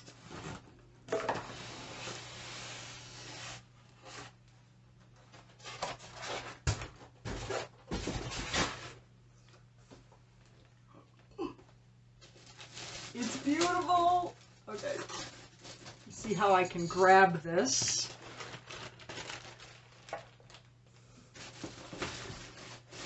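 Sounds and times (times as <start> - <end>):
box knocks and bumps: 6.6 - 8.7.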